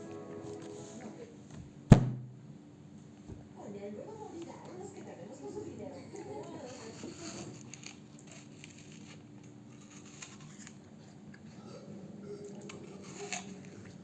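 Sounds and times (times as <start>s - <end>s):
chewing and crunching food: 6.2s - 11.8s.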